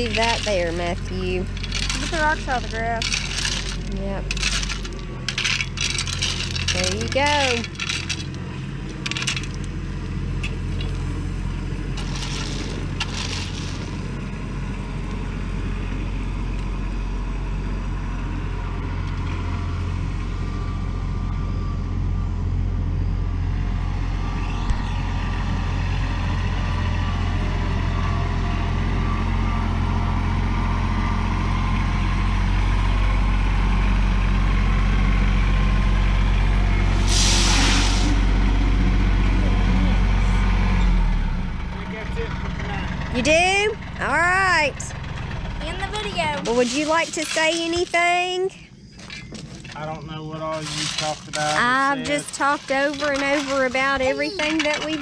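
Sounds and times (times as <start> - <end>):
tractor engine running: 0.0 - 37.3, 38.1 - 49.8
brief hisses: 37.0 - 38.2.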